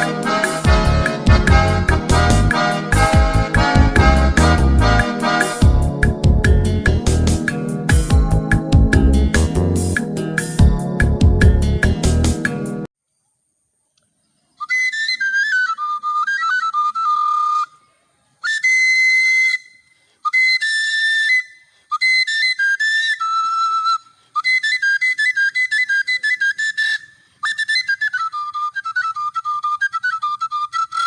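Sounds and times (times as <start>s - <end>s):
whistle-like solo melody: 14.6s - 17.8s, 18.4s - 31.0s.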